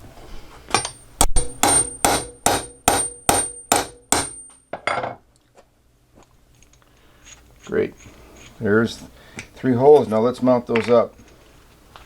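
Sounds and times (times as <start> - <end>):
hammer pounding steel punch: 0.8 - 4.5.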